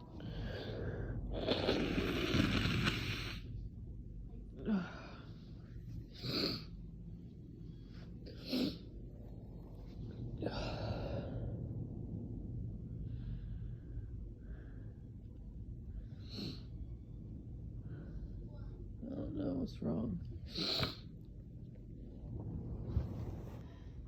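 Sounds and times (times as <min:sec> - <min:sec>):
person breathing hard: 0:00.1 - 0:03.5, 0:10.4 - 0:11.9.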